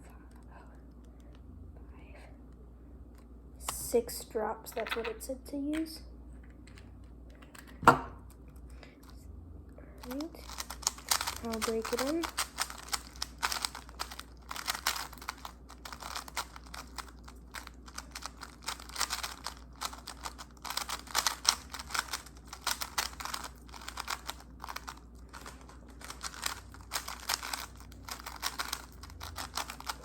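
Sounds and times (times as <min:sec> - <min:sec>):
puzzle cube plastic clicks: 0:10.0 - 0:30.0.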